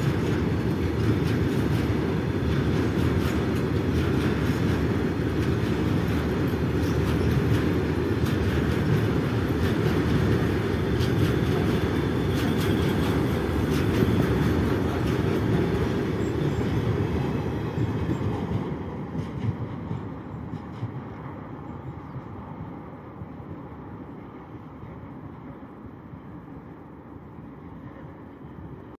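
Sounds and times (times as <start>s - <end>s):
wheel clicks on rail: 0.0s - 21.3s
freight train wheels rumbling on rail: 0.0s - 28.9s.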